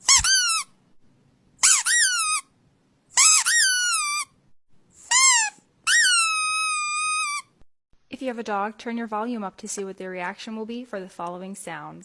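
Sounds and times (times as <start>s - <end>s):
squeaky toy squeaking: 0.0s - 0.7s, 1.6s - 2.5s, 3.2s - 4.4s, 5.0s - 7.6s.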